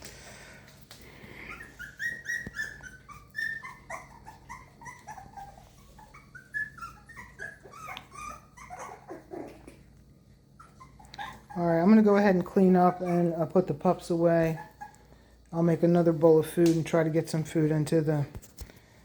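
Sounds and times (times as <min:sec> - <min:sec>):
puppies whimpering: 0:01.1 - 0:16.0.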